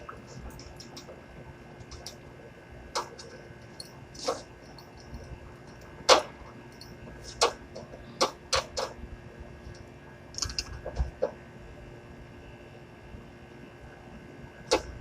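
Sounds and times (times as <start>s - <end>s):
faint steady hum: 0.0s - 15.0s
sharp clicks and knocks: 2.9s - 9.0s.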